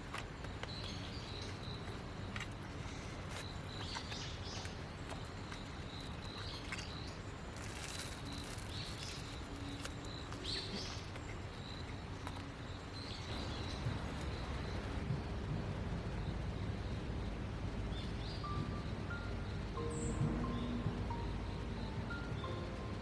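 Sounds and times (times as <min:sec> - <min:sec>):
rustling hiss: 0:00.0 - 0:15.2
small birds chirping: 0:00.0 - 0:15.5
outdoor background noise: 0:00.0 - 0:23.0.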